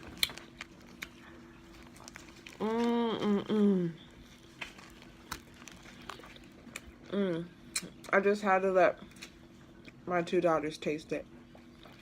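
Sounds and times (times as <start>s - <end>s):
person humming with closed mouth: 2.6s - 4.0s, 7.1s - 7.5s.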